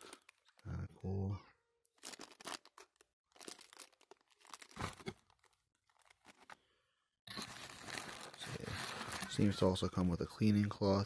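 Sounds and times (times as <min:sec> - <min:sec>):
plastic bags crinkling and rustling: 0:00.0 - 0:00.7, 0:01.9 - 0:06.6, 0:07.3 - 0:09.8.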